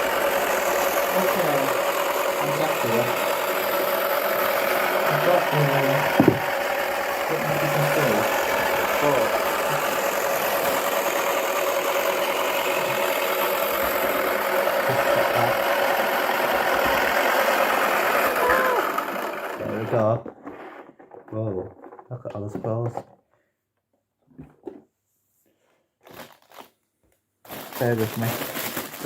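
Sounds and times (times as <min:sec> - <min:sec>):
small electric motor humming: 0:00.0 - 0:20.1
knock: 0:06.2 - 0:06.4.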